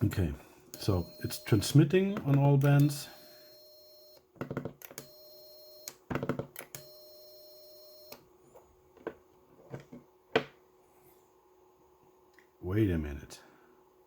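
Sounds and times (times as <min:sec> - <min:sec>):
steady beeping tone: 0:00.8 - 0:01.8.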